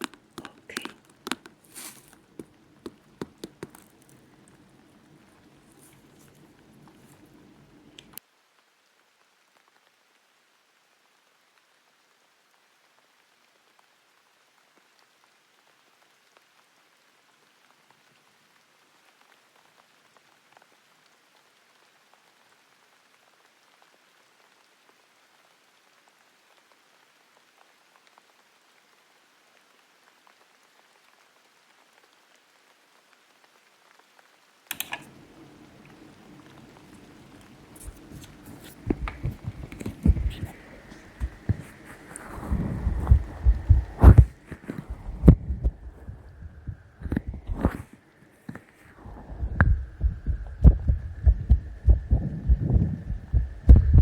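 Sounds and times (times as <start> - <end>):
rubbing sound: 0.0 - 8.1, 36.9 - 54.0
ear-picking tool scratching microphone: 0.0 - 8.2, 36.5 - 54.0
low hiss: 0.0 - 54.0.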